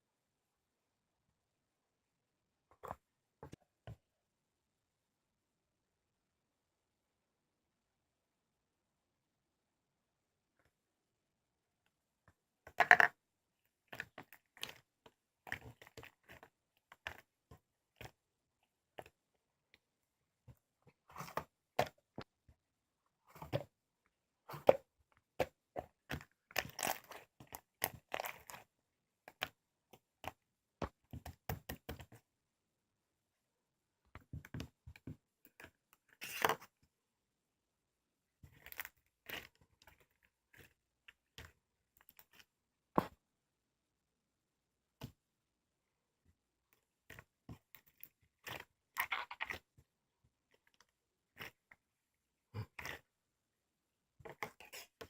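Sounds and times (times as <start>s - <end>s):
crinkling and rustling: 46.8s - 49.8s.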